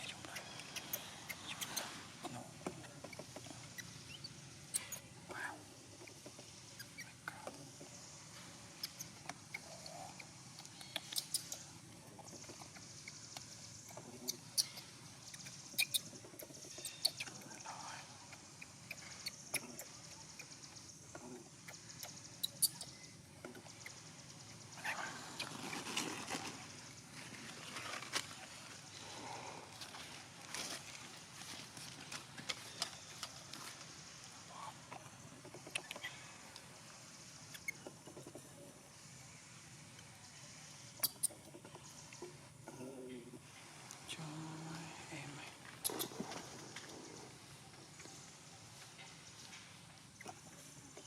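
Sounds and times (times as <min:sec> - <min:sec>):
baby monkey squeaking: 0:00.0 - 0:01.9, 0:03.0 - 0:05.0, 0:10.8 - 0:11.6, 0:14.3 - 0:17.4, 0:22.4 - 0:23.0, 0:45.8 - 0:46.2
rustling: 0:25.1 - 0:34.3.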